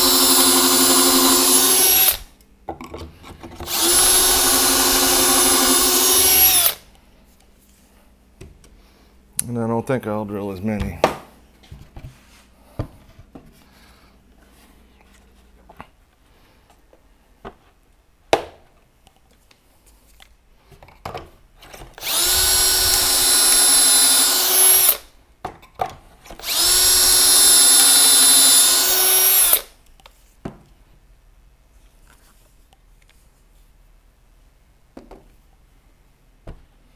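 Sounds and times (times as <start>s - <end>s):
power drill whining: 0.0s - 2.3s, 3.6s - 6.8s, 22.0s - 25.1s, 26.3s - 29.7s.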